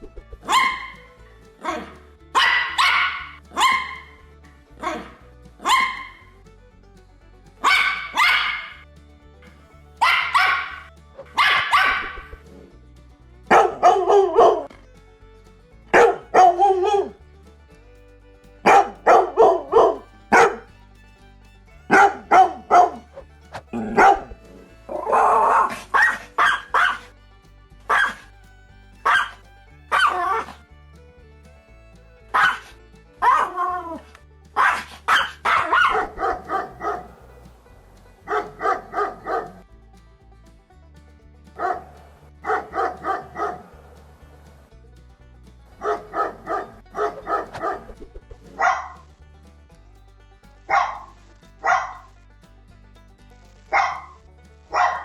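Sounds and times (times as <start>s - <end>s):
background music: 0.0s - 55.0s
dog barking: 0.5s - 0.9s, 2.4s - 4.0s, 4.8s - 6.1s, 7.6s - 8.8s, 10.0s - 10.8s, 11.4s - 12.2s, 13.5s - 14.7s, 16.0s - 17.1s, 18.7s - 20.6s, 21.9s - 23.0s, 23.8s - 24.4s, 26.0s - 27.0s, 27.9s - 28.2s, 29.1s - 29.4s, 32.4s - 32.6s, 33.2s - 34.0s, 34.6s - 37.1s, 38.3s - 39.6s, 41.6s - 43.6s, 45.8s - 49.0s, 50.7s - 52.1s, 53.7s - 55.0s.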